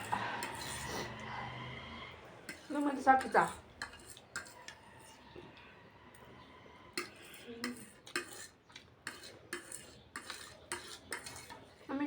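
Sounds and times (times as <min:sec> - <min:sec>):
utensils clinking against a bowl: 0:00.0 - 0:01.3, 0:02.4 - 0:05.2, 0:06.9 - 0:12.0.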